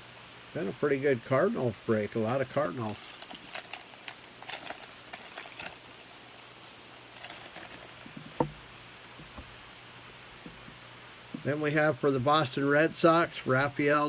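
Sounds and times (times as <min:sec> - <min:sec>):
trading cards sliding and rustling: 0:01.5 - 0:08.5.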